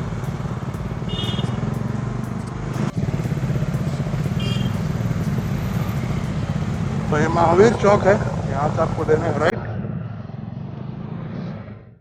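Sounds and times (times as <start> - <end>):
motorcycle engine running: 0.0 - 9.5.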